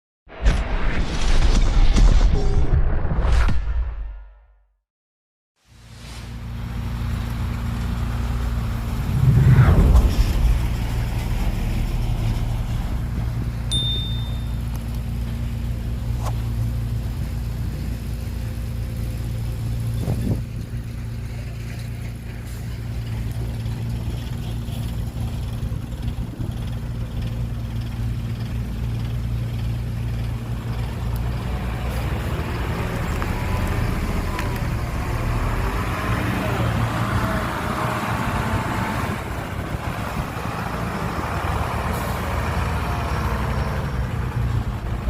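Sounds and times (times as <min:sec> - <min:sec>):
heavy diesel engine running: 0:06.3 - 0:45.0
short high beep: 0:13.7 - 0:14.7.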